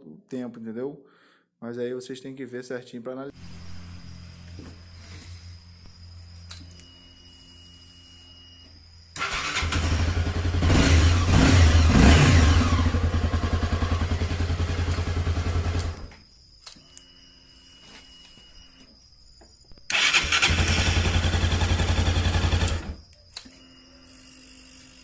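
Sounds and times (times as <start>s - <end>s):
motorcycle engine running: 9.4s - 16.0s, 20.4s - 23.0s.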